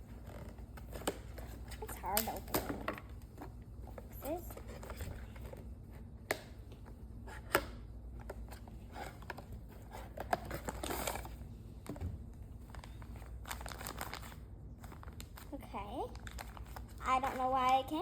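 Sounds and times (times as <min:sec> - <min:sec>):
wrapping crinkling and tearing: 0:08.9 - 0:11.4, 0:12.5 - 0:18.0.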